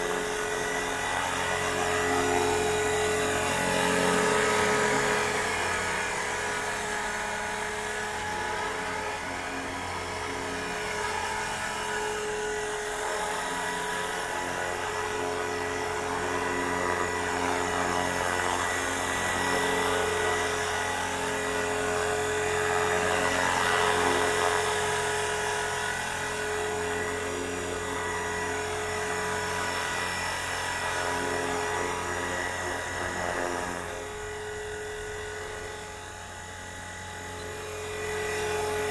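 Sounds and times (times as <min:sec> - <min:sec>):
rc helicopter whine: 0:00.0 - 0:38.9.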